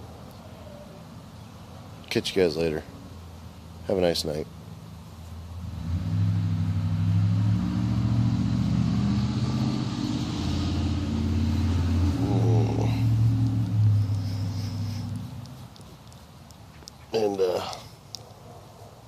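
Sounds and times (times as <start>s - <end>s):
engine humming: 4.6s - 18.2s.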